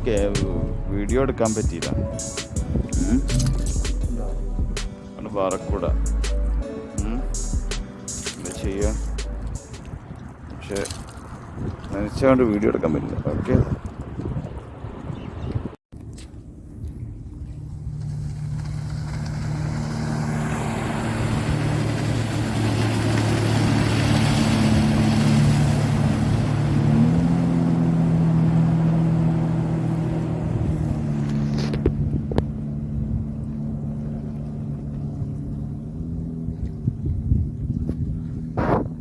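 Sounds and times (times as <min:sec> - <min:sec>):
motor engine passing by: 0:17.2 - 0:38.6.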